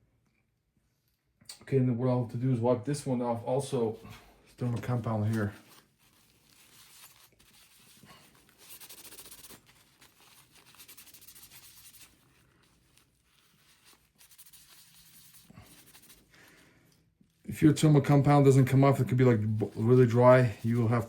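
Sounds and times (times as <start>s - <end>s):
paper towel rubbing: 3.8s - 16.7s, 17.5s - 21.0s.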